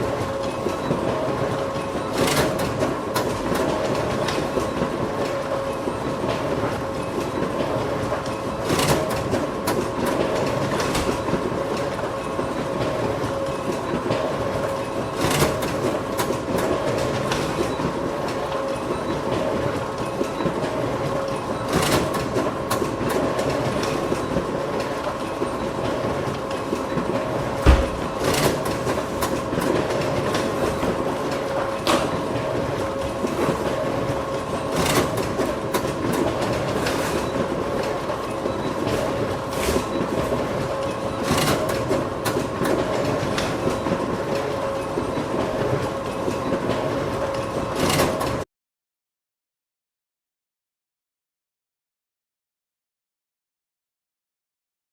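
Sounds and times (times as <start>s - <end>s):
photocopier whirring: 0.0s - 48.4s
low thump: 27.6s - 28.1s.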